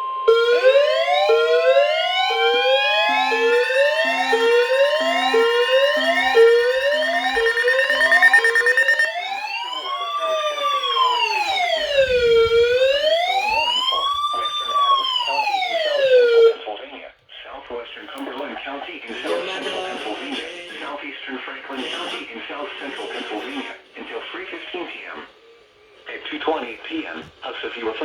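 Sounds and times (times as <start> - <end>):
steady tones: 0.3 - 13.4
siren rising sweeps: 0.3 - 16.6
siren wail: 0.3 - 16.6.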